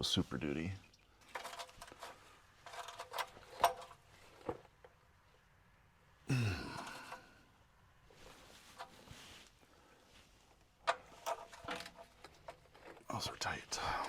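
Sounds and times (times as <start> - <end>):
man grunting: 6.3 - 7.2.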